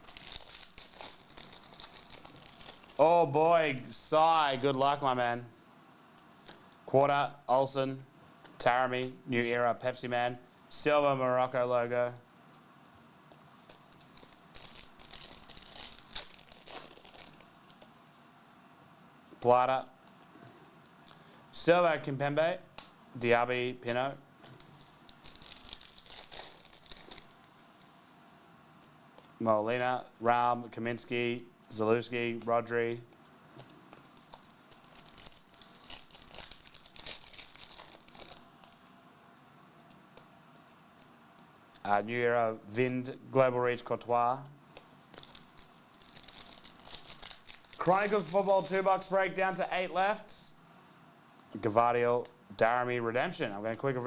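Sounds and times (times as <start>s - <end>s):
cards rustling: 0.0s - 3.9s, 13.7s - 17.9s, 24.5s - 27.8s, 33.5s - 38.8s, 44.8s - 49.6s
wrapper crinkling and tearing: 0.0s - 3.9s, 13.6s - 17.9s, 24.5s - 27.8s, 34.0s - 38.9s, 45.1s - 49.2s.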